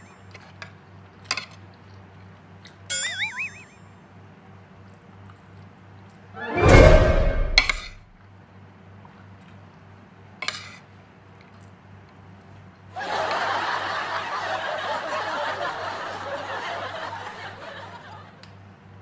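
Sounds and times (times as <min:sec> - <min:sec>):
crowd laughing: 0:13.0 - 0:18.4.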